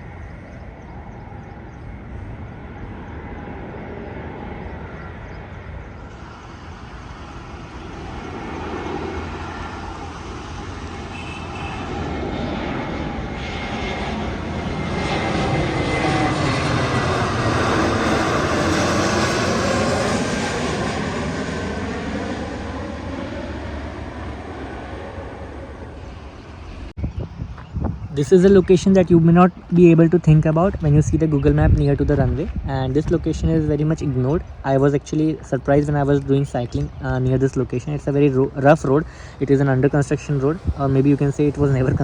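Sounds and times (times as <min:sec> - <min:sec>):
airliner passing overhead: 0:00.0 - 0:42.0.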